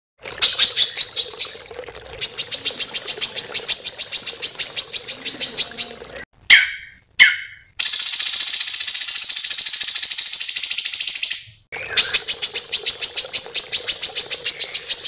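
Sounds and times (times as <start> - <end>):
songbird calling: 2.3 - 15.0.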